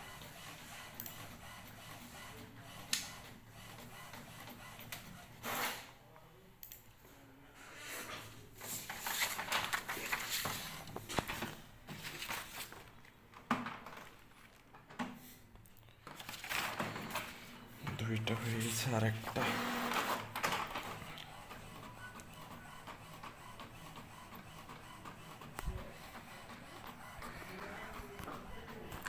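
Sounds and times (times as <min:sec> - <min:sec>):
paper rustling: 0:08.6 - 0:13.2, 0:16.0 - 0:17.4
office printer clattering: 0:16.1 - 0:29.0.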